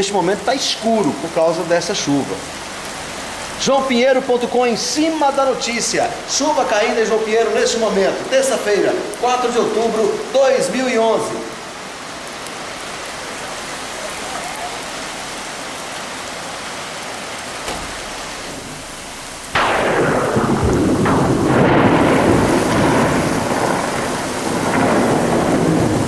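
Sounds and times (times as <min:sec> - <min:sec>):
heavy rain falling: 0:00.0 - 0:26.0
thunder clap rolling: 0:17.6 - 0:26.0.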